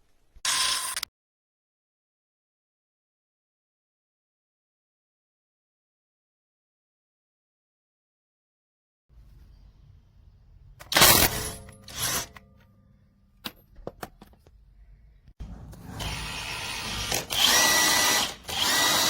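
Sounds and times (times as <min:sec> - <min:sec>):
cordless impact wrench bursts: 0:16.0 - 0:19.0.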